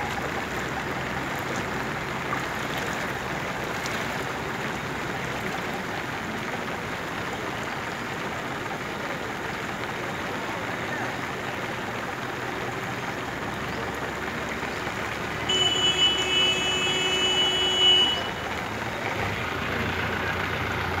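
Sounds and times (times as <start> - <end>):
heavy rain: 0.0 - 21.0
running floodwater: 0.0 - 21.0
vehicle horn sounding: 15.5 - 18.5.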